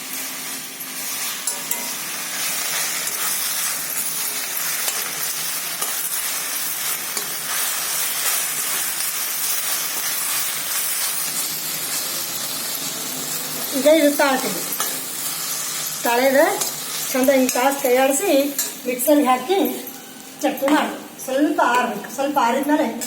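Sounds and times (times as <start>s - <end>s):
leaves sizzling in hot oil: 0.0s - 23.0s.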